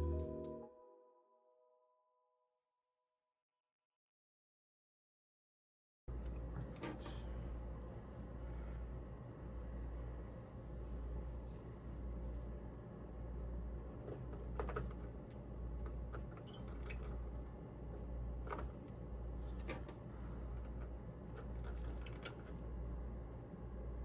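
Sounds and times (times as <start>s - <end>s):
steady low hum: 6.1s - 16.2s.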